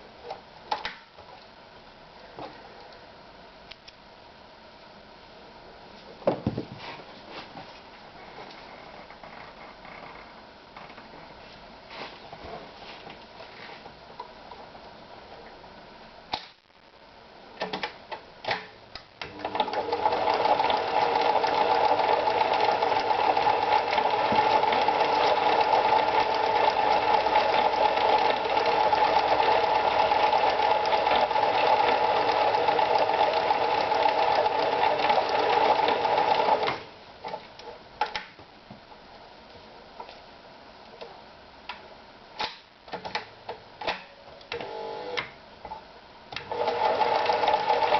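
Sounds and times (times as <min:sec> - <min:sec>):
sewing machine clicks: 0:19.2 - 0:36.8, 0:46.4 - 0:47.9
sewing machine running: 0:19.2 - 0:36.8, 0:46.5 - 0:47.9.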